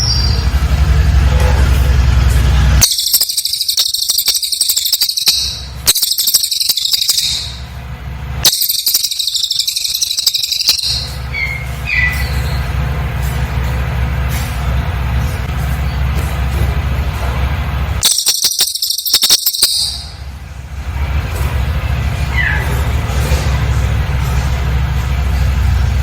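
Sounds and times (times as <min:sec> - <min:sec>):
bird singing high-pitched bursts: 0:00.0 - 0:00.6, 0:02.8 - 0:07.8, 0:08.4 - 0:12.8, 0:18.0 - 0:20.3
soft bird chirps: 0:02.8 - 0:07.8, 0:08.4 - 0:12.8, 0:18.0 - 0:20.2.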